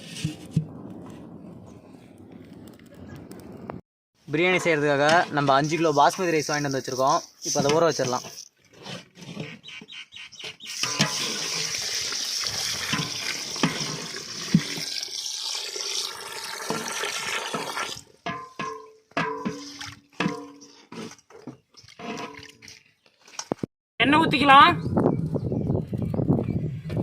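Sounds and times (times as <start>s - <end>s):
water splashing in a pot: 10.7s - 20.9s
water pouring over rice: 10.8s - 18.0s.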